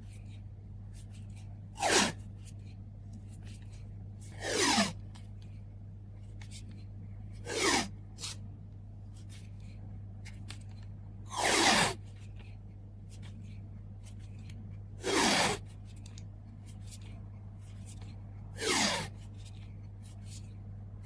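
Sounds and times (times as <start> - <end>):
low steady hum: 0.0 - 21.0
tape ripping off a roll: 11.3 - 12.0, 15.0 - 15.6, 18.6 - 19.1.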